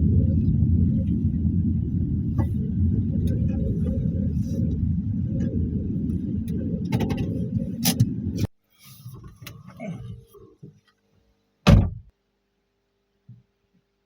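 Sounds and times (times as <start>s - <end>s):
low rumble: 0.0s - 8.5s
loud thump: 11.7s - 12.1s.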